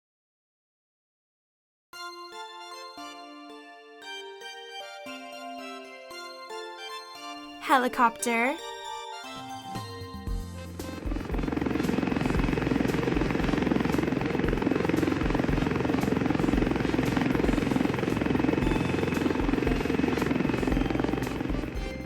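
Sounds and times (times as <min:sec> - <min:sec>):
helicopter rotor and engine: 0:09.8 - 0:22.0.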